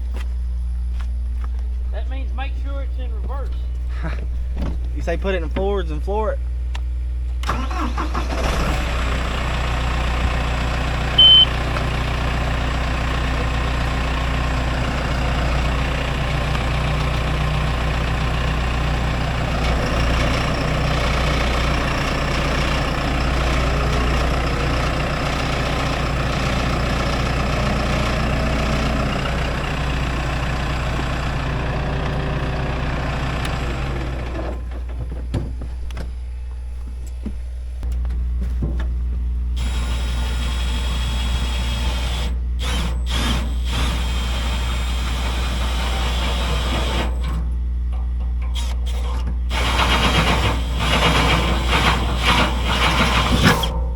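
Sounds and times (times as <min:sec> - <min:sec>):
tractor engine running: 0:00.0 - 0:53.9
short high beep: 0:11.2 - 0:11.6.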